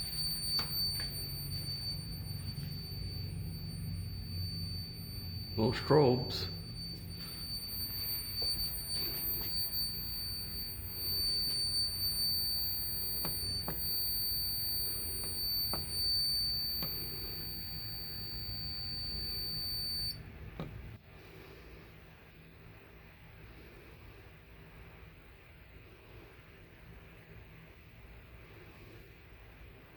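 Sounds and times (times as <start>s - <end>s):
high-pitched electronic alarm buzzer: 0.0s - 20.2s.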